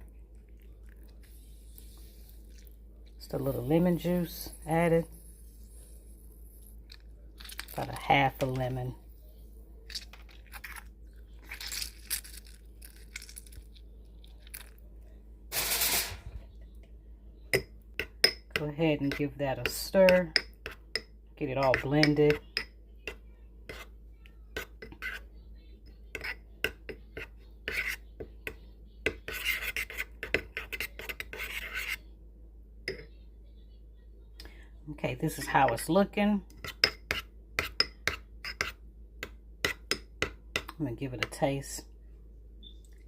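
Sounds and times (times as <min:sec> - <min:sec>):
utensil scraping a bowl: 0:24.6 - 0:25.3, 0:26.1 - 0:32.0, 0:36.6 - 0:38.8.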